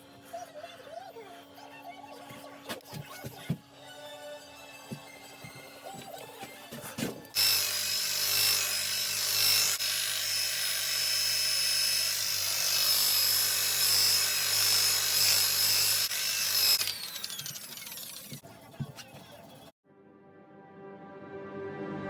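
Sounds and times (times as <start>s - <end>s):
electric power tool whining: 7.4s - 18.4s.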